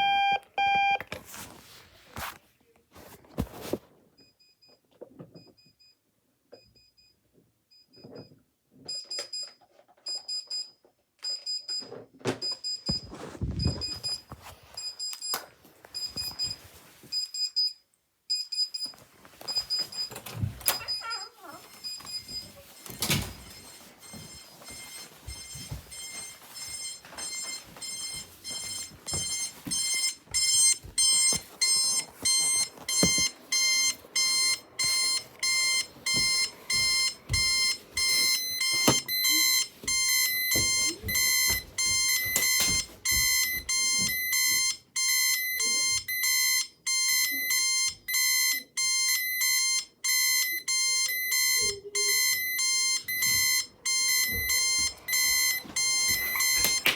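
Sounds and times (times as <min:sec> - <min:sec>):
electronic alarm beeping: 0:00.0 - 0:01.0, 0:17.2 - 0:56.9.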